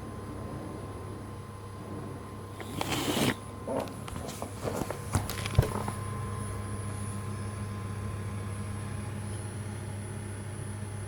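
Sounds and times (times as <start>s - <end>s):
fridge compressor humming: 0.0s - 11.0s
handling clicks and knocks: 3.8s - 6.0s.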